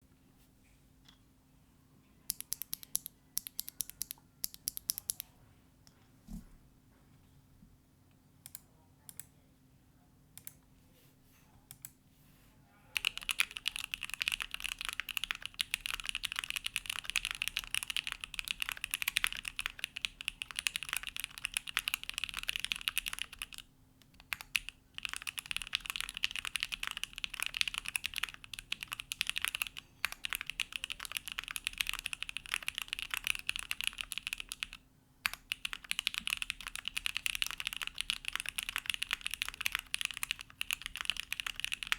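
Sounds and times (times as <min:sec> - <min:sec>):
mechanical keyboard typing: 0:02.3 - 0:05.2, 0:13.0 - 0:41.9.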